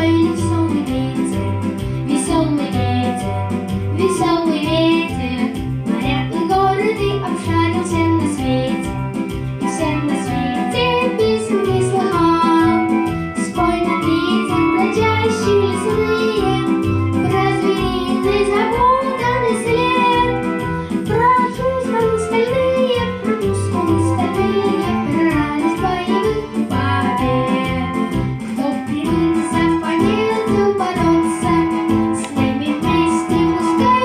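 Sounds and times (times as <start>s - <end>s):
boy singing: 0.0s - 1.1s, 9.8s - 12.8s, 13.4s - 20.4s, 21.1s - 28.0s, 28.6s - 34.0s
instrumental accompaniment with beat: 0.0s - 34.0s.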